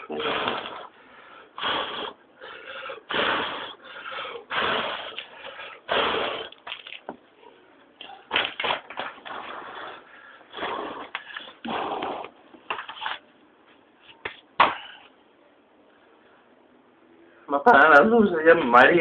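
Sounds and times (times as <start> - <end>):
person blowing on a fire: 0.0 - 1.0, 1.6 - 6.6, 9.3 - 12.3.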